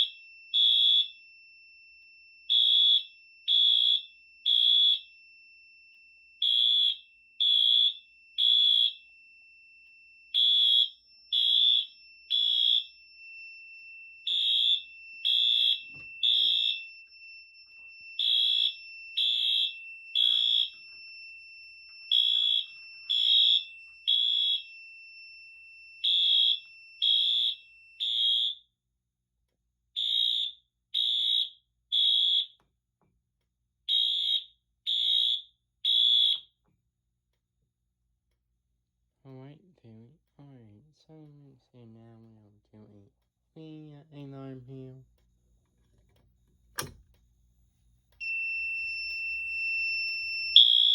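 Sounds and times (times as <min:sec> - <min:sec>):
fire alarm beeping: 0:00.0 - 0:28.8, 0:30.0 - 0:32.6, 0:33.9 - 0:36.6, 0:48.1 - 0:50.9.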